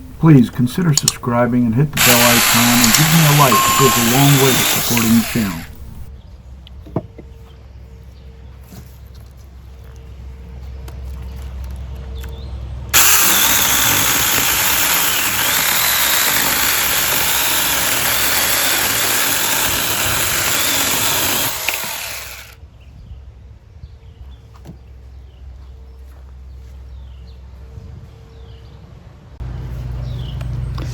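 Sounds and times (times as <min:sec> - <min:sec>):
electric chainsaw running: 0:02.0 - 0:06.1, 0:13.0 - 0:22.6.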